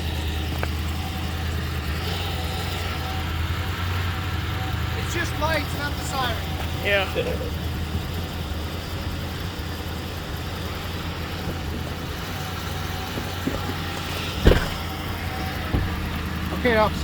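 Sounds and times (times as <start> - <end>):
car engine idling: 0.0 - 17.0
sharp thump: 13.4 - 16.0.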